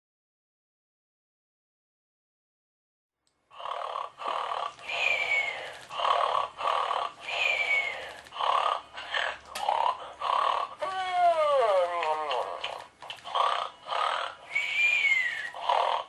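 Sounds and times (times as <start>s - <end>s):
toy dog snoring: 3.5s - 16.0s
falling whistle: 14.5s - 15.6s.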